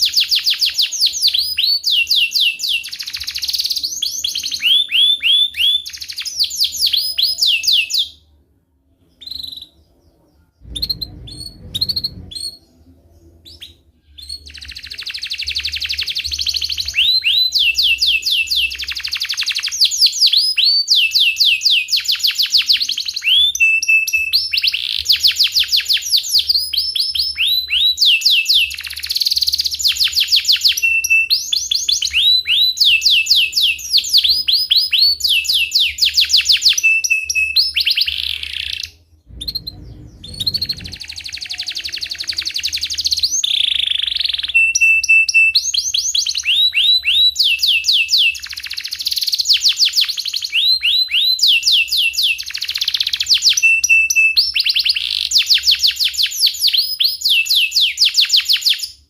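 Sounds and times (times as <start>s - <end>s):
canary singing: 0.0s - 8.3s, 9.0s - 59.0s
short low rumble: 10.6s - 13.2s, 39.2s - 41.1s.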